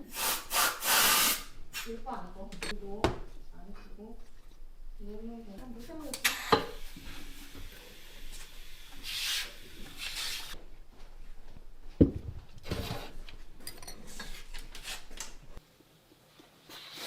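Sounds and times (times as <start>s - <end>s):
rubbing and scraping on ceramic: 8.3s - 10.6s, 12.4s - 15.6s.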